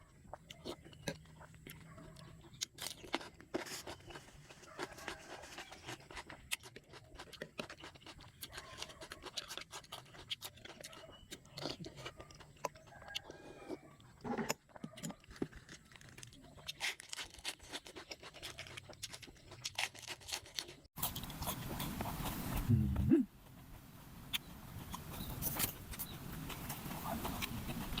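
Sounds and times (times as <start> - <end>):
chewing: 0.0 - 23.0, 24.3 - 28.0
crab shells cracking: 15.2 - 21.3.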